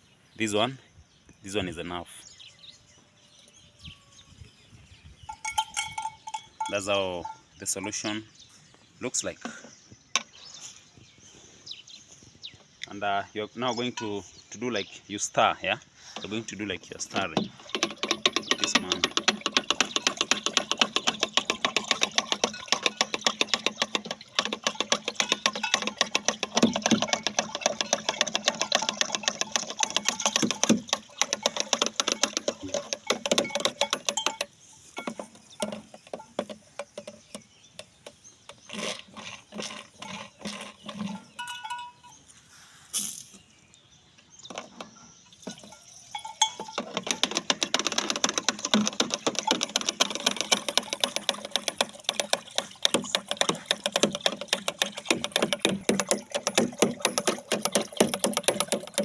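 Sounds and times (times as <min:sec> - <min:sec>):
liquid stirred in a container clicking: 0:16.2 - 0:42.1, 0:45.4 - 0:59.0.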